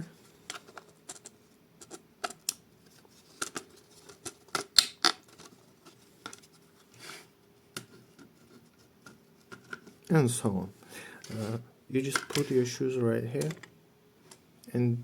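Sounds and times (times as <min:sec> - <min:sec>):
plastic scrape: 0:11.2 - 0:12.7.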